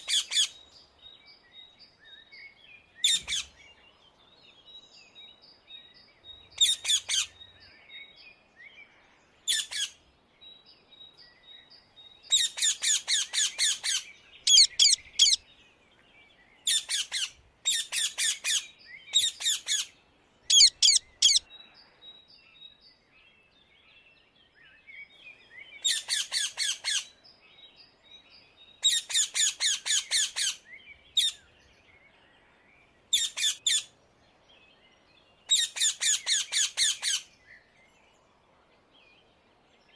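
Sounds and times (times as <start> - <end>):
parakeet shrill calling: 12.4 - 15.4, 20.5 - 21.4
faint high chirps: 14.5 - 15.4, 20.5 - 21.5.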